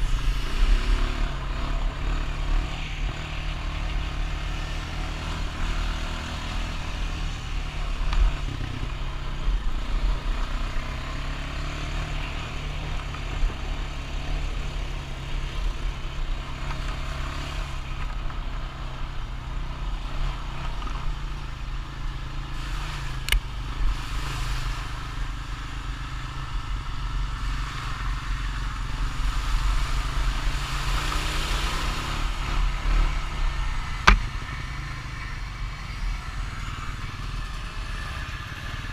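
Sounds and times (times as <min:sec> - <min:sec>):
atv engine running: 0:00.0 - 0:38.9
sharp knocks: 0:34.0 - 0:34.3.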